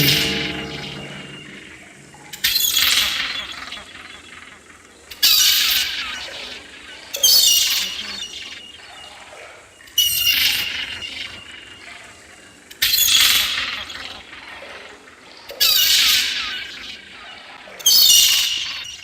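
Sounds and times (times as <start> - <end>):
bright ringing crashes: 0.0 - 2.8.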